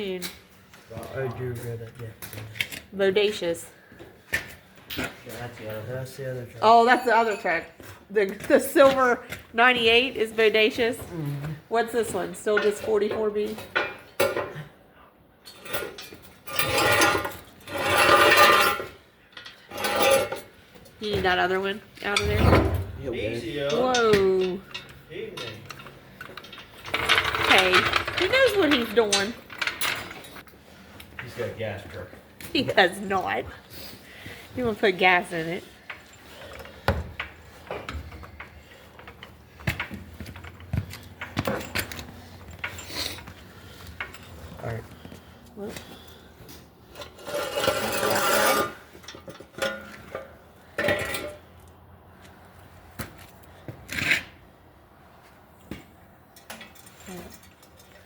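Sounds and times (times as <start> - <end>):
metal tools clicking and knocking: 12.4 - 14.6, 23.6 - 31.3, 47.0 - 51.7.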